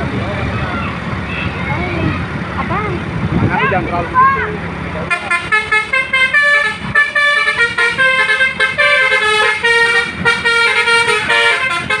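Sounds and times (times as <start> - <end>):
bus horn playing a tune: 4.4 - 12.0.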